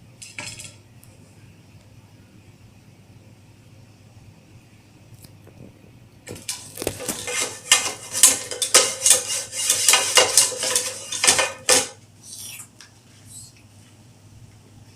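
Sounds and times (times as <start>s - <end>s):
utensil scraping metal cookware: 6.4s - 12.0s.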